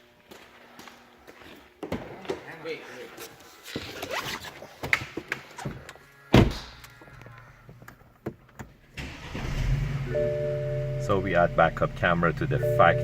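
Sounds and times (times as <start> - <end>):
low steady hum: 9.8 - 13.0.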